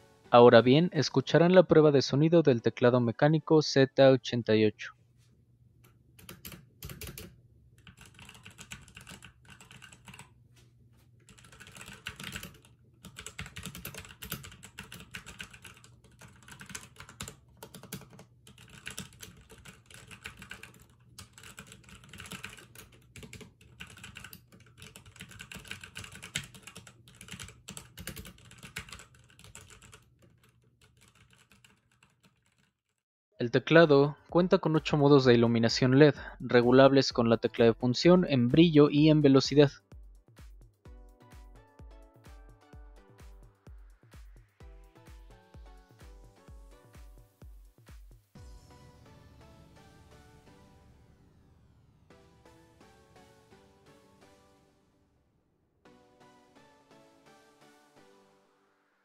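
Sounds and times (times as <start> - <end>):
mechanical keyboard typing: 6.2 - 10.3, 11.3 - 33.0.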